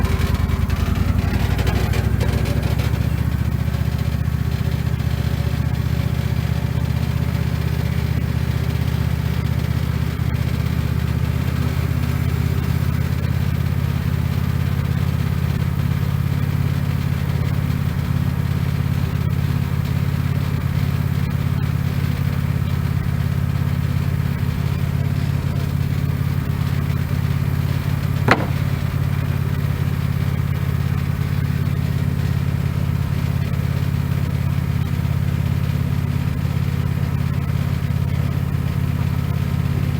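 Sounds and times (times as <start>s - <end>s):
sawmill engine running: 0.0s - 13.8s, 24.9s - 32.6s
sharp click: 28.3s - 29.0s.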